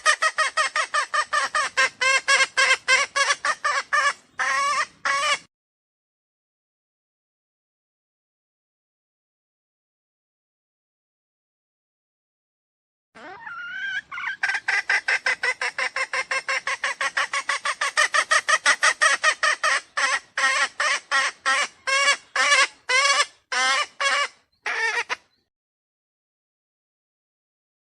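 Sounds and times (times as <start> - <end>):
junglefowl clucking call: 0.0 - 5.5, 13.2 - 25.3.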